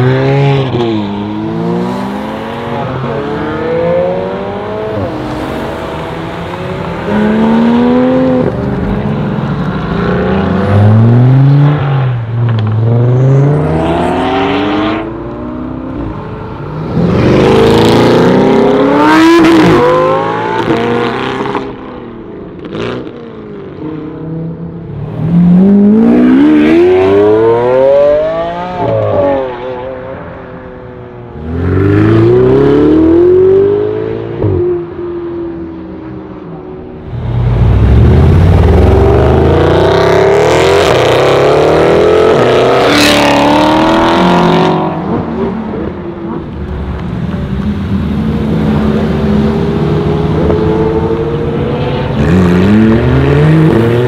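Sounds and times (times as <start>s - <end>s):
supercar engines accelerating hard: 36.8s - 54.0s.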